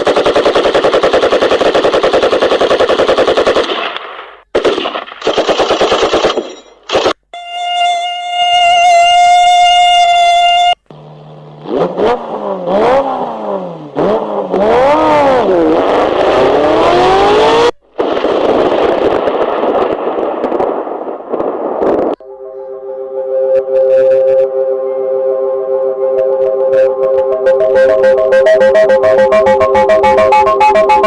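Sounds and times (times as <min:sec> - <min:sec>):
steady electronic tone: 0:07.4 - 0:11.6, 0:22.2 - 0:31.0
rising and falling pitch sweeps: 0:11.4 - 0:17.8, 0:22.2 - 0:31.0.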